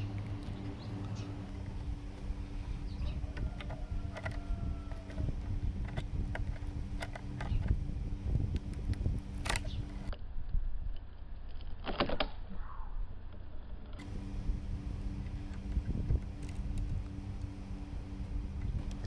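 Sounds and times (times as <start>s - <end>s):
steady low hum: 0.0s - 19.0s
sharp metallic clicks: 8.5s - 10.2s.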